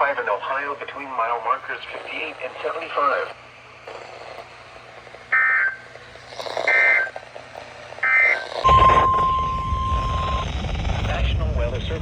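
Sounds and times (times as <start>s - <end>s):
steady attention tone: 8.2s - 11.2s
low rumbling noise: 8.6s - 12.0s.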